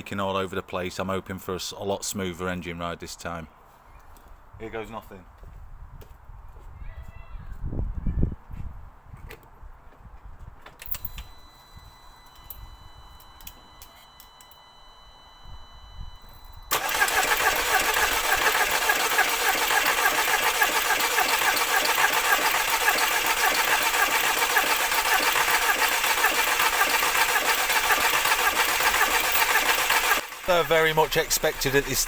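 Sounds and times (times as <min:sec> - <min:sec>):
engine cranking on starter: 0:16.7 - 0:32.0.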